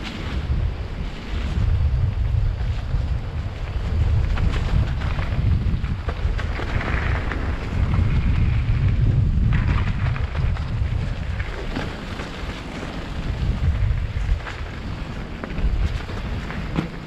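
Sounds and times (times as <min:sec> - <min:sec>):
bike clicks and rattles: 0:00.0 - 0:17.0
wind buffeting microphone: 0:00.0 - 0:17.0.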